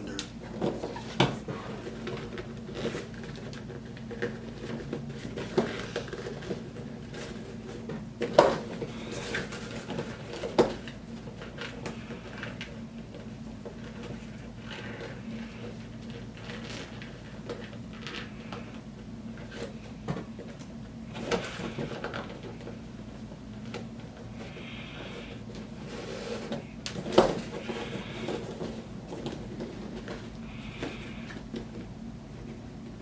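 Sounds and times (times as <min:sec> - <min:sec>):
steady low hum: 0:00.0 - 0:33.0
roller skate parts clattering: 0:19.4 - 0:31.8.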